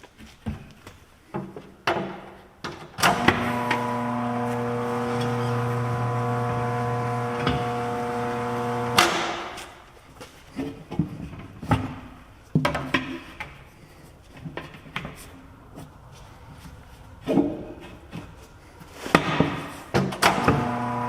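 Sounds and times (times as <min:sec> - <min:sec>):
electric motor humming: 0:03.1 - 0:09.0, 0:20.4 - 0:21.0.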